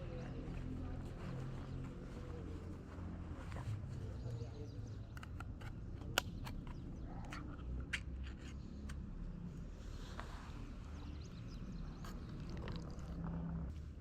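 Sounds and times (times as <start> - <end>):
cat crunching dry food: 12.2 - 13.5.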